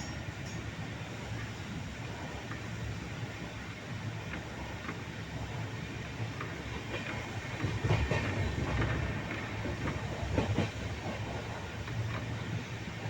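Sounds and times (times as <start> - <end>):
train rumbling on rails: 0.0 - 13.0.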